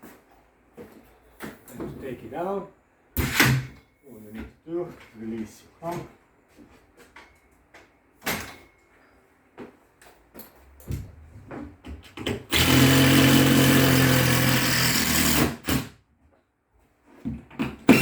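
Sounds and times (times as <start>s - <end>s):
power drill running: 12.5s - 15.9s.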